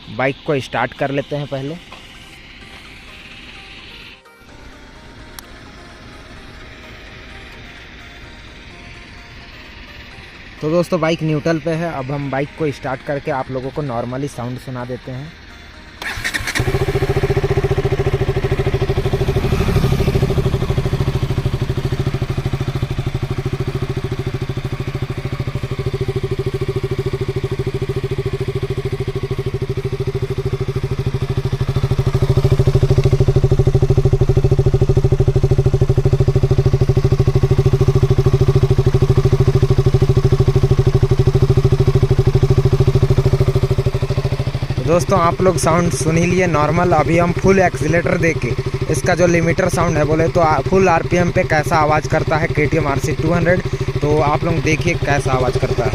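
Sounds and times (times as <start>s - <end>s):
motorcycle engine idling: 0.0s - 55.9s.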